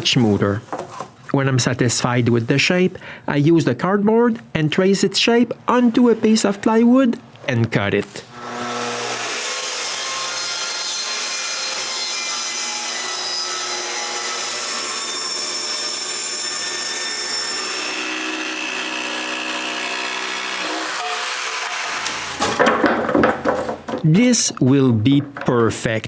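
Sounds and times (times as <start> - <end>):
power saw cutting plywood: 8.3 - 22.7.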